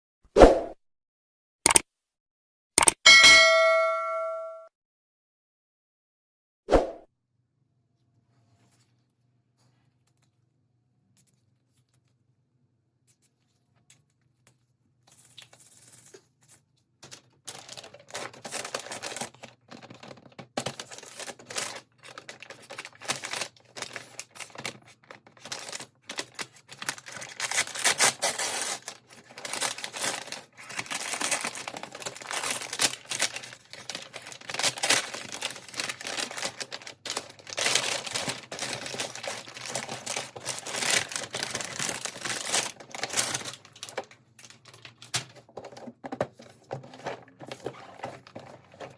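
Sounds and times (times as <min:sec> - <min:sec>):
toy packaging crinkling and tearing: 0:17.0 - 0:48.9.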